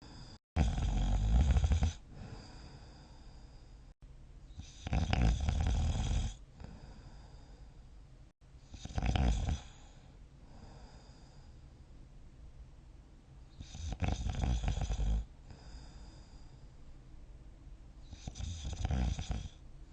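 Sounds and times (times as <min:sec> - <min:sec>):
quiet breathing: 0:00.0 - 0:00.4, 0:01.5 - 0:05.1, 0:06.2 - 0:11.9, 0:14.6 - 0:17.1, 0:18.0 - 0:19.9
person snoring: 0:00.0 - 0:03.6, 0:04.6 - 0:07.6, 0:08.7 - 0:11.3, 0:13.6 - 0:16.3, 0:18.1 - 0:19.6.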